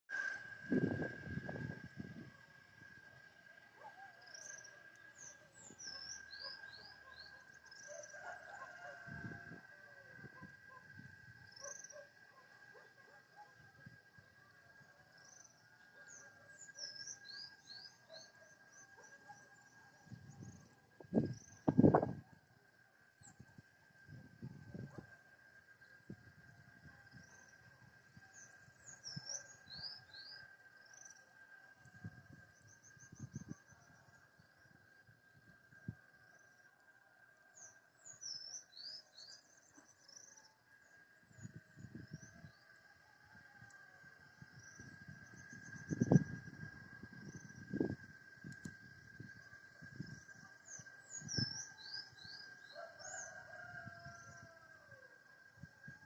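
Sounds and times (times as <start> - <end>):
faint high-pitched hum: 0.1 - 52.8
birdsong: 3.8 - 9.1, 10.4 - 13.5, 15.2 - 20.6, 28.1 - 31.2
rooster crowing: 7.9 - 10.2, 52.6 - 55.2.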